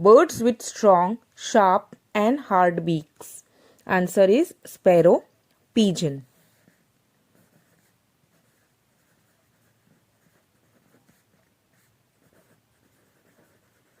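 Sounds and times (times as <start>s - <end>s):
pen scratching on paper: 6.2s - 14.0s.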